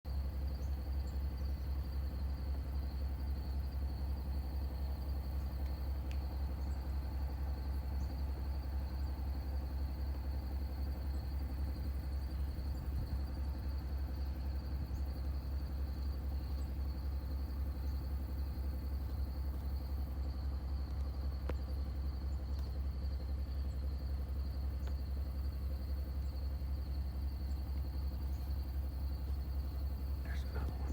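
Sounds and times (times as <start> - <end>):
faint ticks: 5.3 - 8.2, 9.8 - 10.5, 14.2 - 30.9
low rumble: 10.2 - 30.9.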